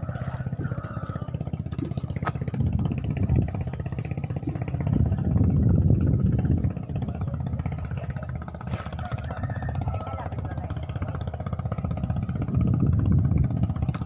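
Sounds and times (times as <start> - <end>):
small engine chugging: 0.0 - 14.0.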